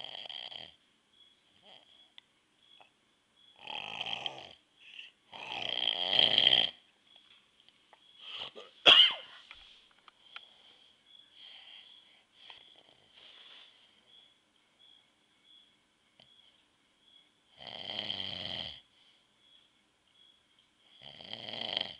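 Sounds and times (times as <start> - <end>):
man snoring: 0.0 - 0.8, 3.6 - 4.6, 5.3 - 6.8, 17.6 - 18.8, 21.0 - 21.9
quiet breaths: 0.0 - 21.9
faint steady high tone: 0.9 - 5.3, 10.4 - 17.5, 19.0 - 21.0.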